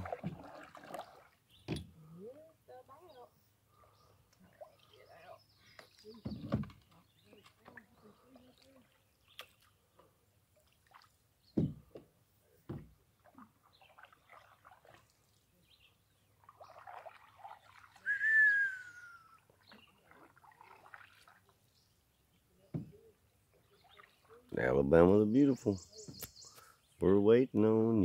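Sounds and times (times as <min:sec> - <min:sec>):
paddle knocking canoe hull: 0:00.0 - 0:01.0, 0:06.1 - 0:07.8, 0:11.5 - 0:13.0, 0:22.7 - 0:23.1
falling whistle-like call: 0:18.0 - 0:19.4.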